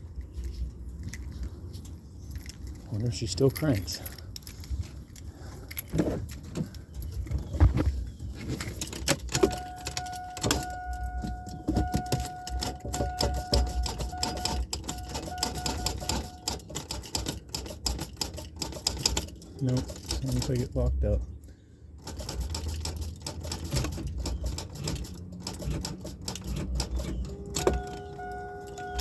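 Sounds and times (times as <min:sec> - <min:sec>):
high electronic warning tone: 0:09.4 - 0:16.6, 0:27.2 - 0:29.0.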